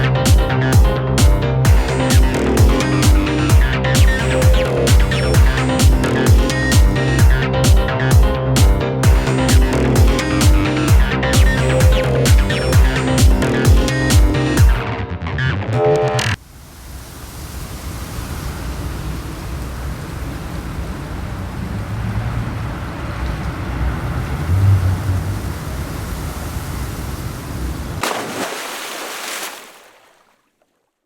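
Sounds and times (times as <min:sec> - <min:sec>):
wind and sea rushing: 0:16.4 - 0:30.3
wind rumble on microphone: 0:16.9 - 0:28.0.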